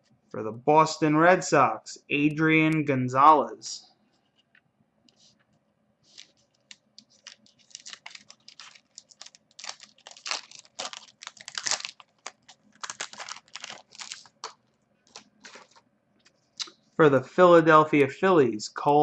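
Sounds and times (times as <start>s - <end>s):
foil wrappers crinkling: 6.0s - 15.8s.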